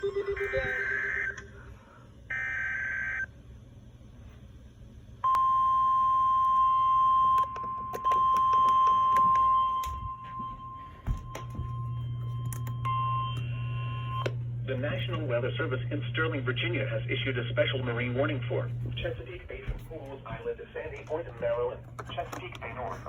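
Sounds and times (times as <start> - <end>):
screechy data tones: 0.0 - 1.6, 2.3 - 3.3
steady high alert tone: 0.0 - 1.7
radio hiss and static crackles: 14.6 - 23.0.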